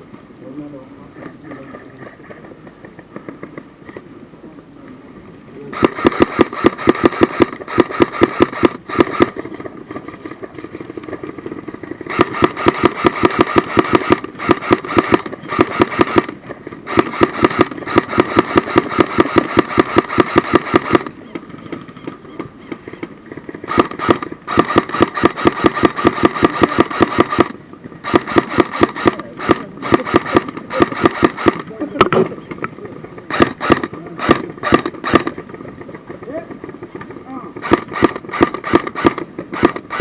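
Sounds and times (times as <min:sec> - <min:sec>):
airsoft gun automatic bursts: 0:05.7 - 0:09.8, 0:10.6 - 0:21.2, 0:23.5 - 0:31.8, 0:33.3 - 0:35.6, 0:37.6 - 0:40.0.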